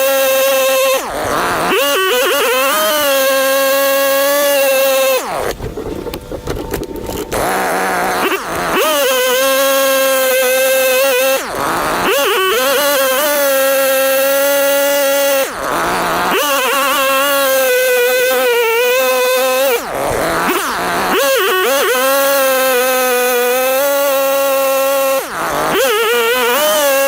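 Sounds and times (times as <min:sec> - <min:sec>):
chainsaw cutting wood: 0:00.0 - 0:27.0.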